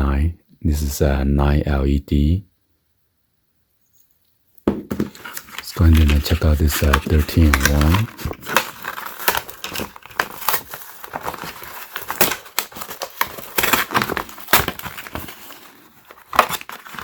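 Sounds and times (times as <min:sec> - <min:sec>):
packaging crinkling: 0:04.9 - 0:17.0.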